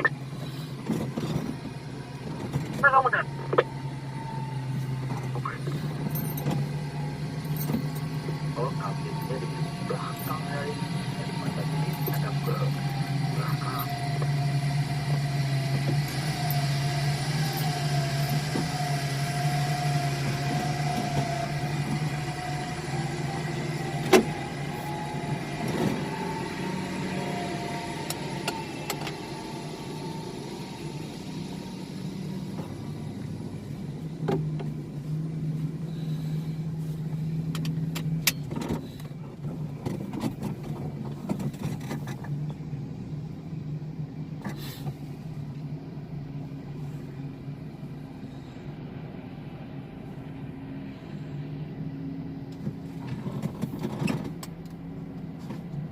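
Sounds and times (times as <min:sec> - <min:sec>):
wavering whine: 0:00.0 - 0:39.0
heavy machinery engine drone: 0:00.0 - 0:55.9.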